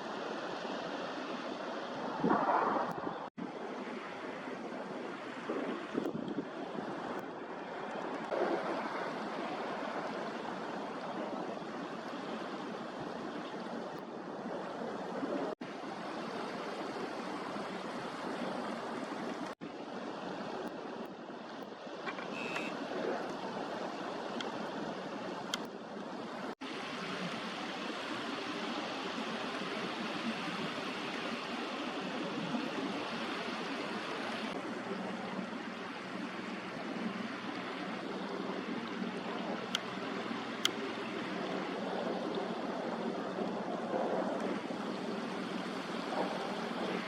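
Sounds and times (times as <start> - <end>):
sea water washing on shore: 0.0 - 47.0.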